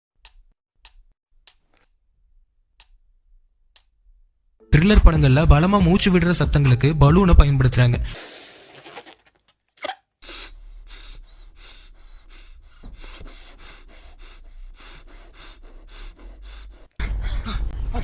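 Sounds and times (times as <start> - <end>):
ragged heavy breathing: 10.2 - 17.9.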